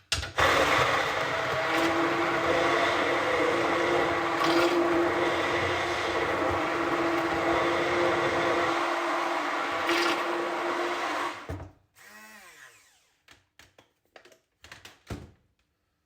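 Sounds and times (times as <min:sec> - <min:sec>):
electric mixer motor running: 0:00.4 - 0:13.1.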